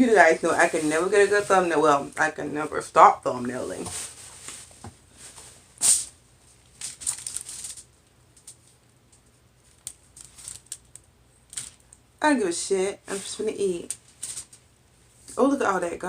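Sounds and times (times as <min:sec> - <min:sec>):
wrappings crackling and rustling: 0:00.0 - 0:12.0, 0:13.1 - 0:14.8.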